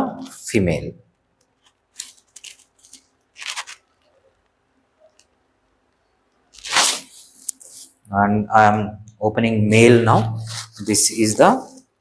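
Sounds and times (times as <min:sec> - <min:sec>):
plastic bag crinkling: 0:02.0 - 0:03.9.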